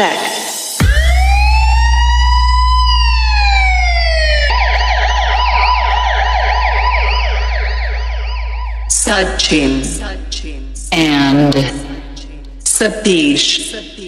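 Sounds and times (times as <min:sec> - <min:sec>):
police siren wailing and yelping: 0:00.8 - 0:09.7
deep bass hum: 0:00.8 - 0:14.0.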